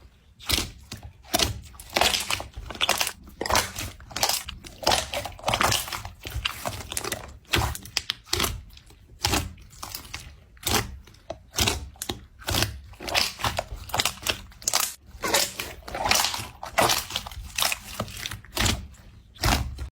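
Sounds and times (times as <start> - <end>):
brittle crunching and crackling: 0.4 - 19.9.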